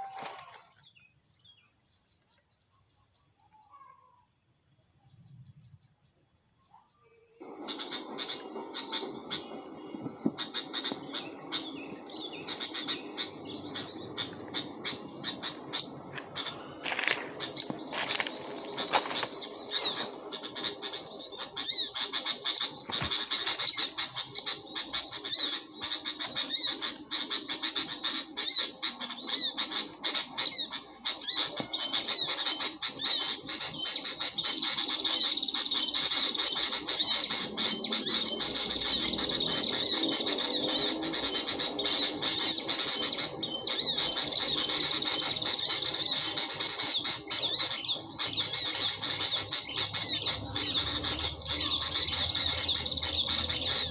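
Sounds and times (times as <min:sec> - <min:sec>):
bird chirping from a speaker: 0:00.0 - 0:53.9.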